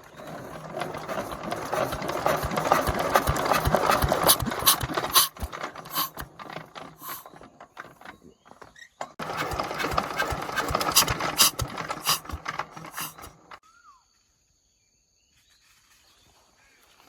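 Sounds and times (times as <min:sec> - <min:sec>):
loud mechanical clatter: 0:00.0 - 0:08.0, 0:09.2 - 0:13.6.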